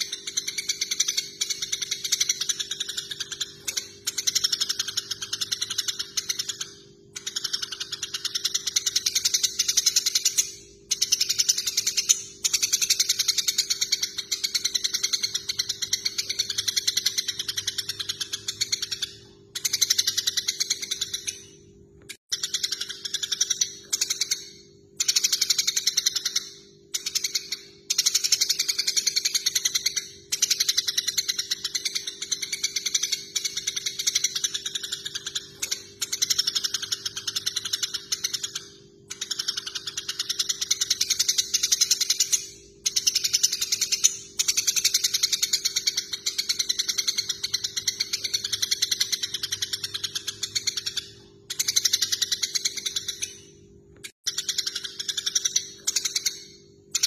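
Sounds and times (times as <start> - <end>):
sparrows rattling chatter: 25.0 - 53.5.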